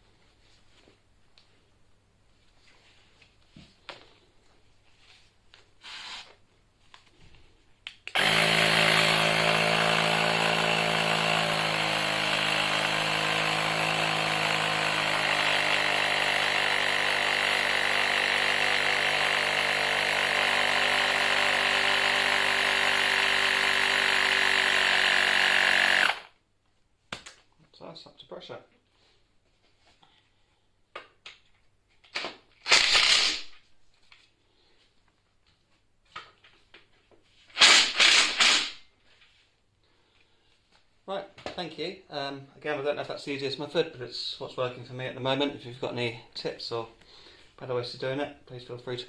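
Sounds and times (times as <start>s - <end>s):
electric air compressor running: 8.2s - 26.3s.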